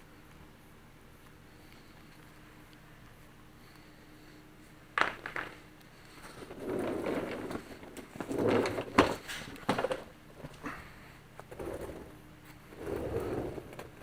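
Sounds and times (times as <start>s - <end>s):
scraping and rustling: 5.0s - 10.1s.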